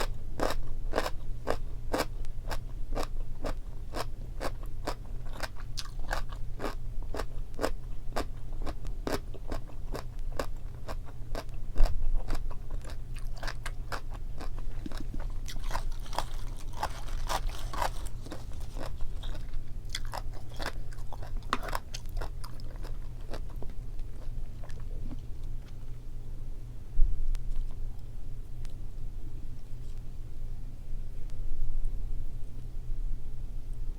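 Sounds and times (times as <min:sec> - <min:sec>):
crisp chewing crunches: 0:00.0 - 0:26.0.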